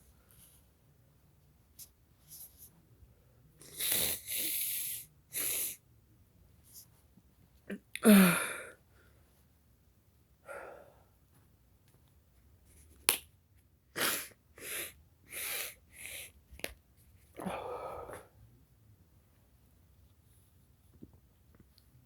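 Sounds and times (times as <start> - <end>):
person sneezing loudly: 14.0 - 15.5.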